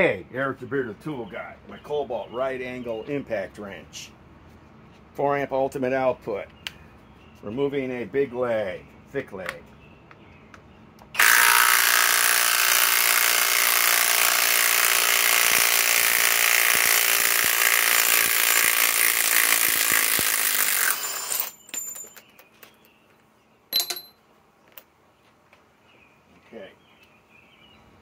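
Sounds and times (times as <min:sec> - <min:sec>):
impact wrench hammering: 0:23.7 - 0:24.2.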